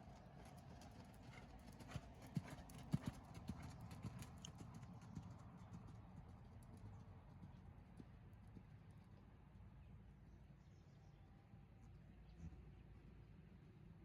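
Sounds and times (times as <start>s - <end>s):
horse hoofbeats dull thuds: 0.0s - 8.7s.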